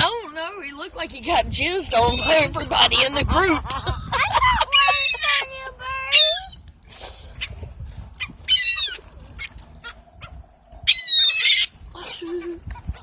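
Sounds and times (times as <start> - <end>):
birds high harsh calls: 8.2 - 11.8.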